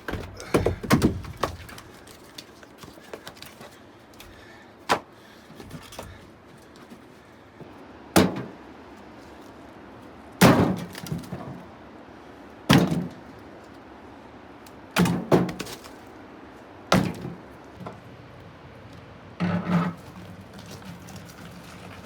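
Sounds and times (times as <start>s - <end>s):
firewood clacking together: 0.0s - 7.0s, 10.4s - 11.6s, 14.7s - 16.1s, 16.9s - 18.0s.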